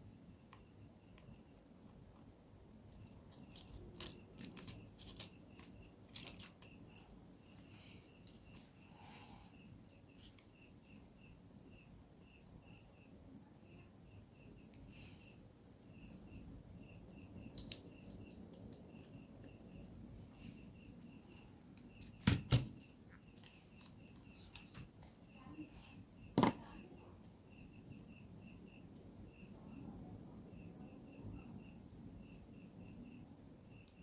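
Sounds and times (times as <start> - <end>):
tools clicking on plastic parts: 2.9 - 6.7.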